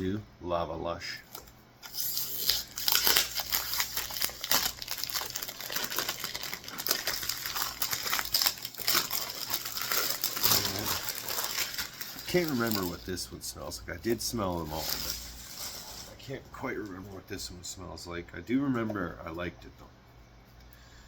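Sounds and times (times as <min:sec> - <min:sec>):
packaging crinkling and rustling: 0:01.2 - 0:13.3, 0:14.0 - 0:17.2.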